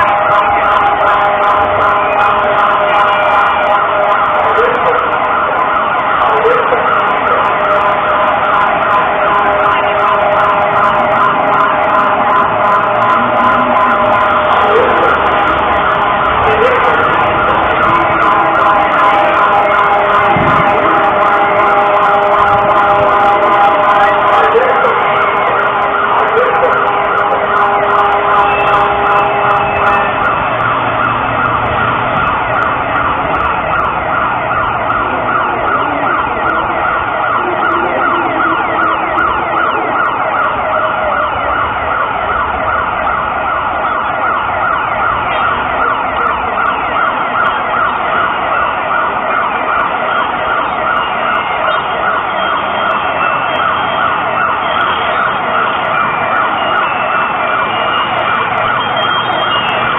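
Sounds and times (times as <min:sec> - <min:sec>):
siren wailing over loudspeakers: 0:00.0 - 0:59.9.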